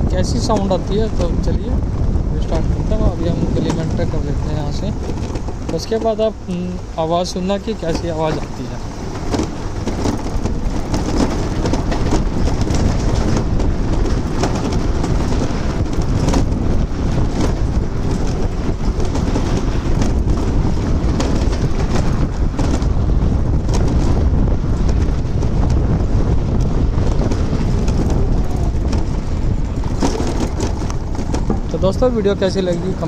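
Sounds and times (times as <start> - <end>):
scooter rattling: 0.0 - 33.0
tyres rumbling on pavers: 0.0 - 33.0
wind buffeting microphone: 0.0 - 33.0.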